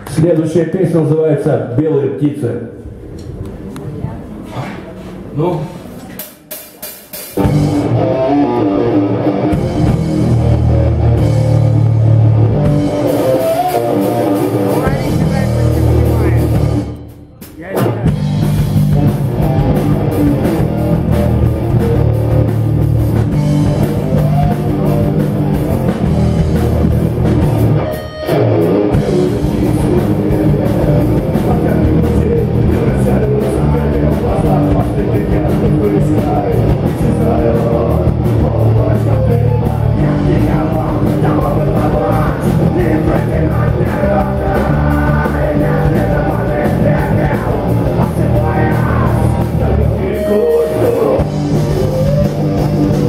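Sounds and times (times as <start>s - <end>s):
live rock band playing: 6.2s - 53.0s.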